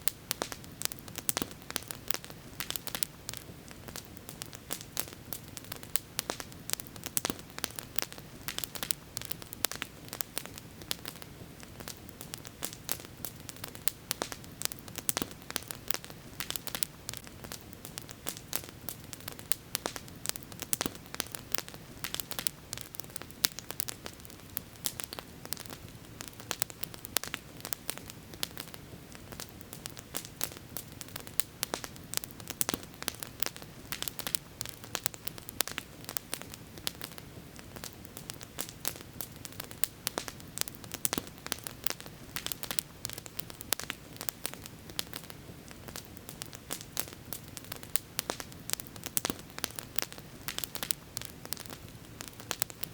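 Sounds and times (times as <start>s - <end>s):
campfire crackling and popping: 0.0s - 52.9s.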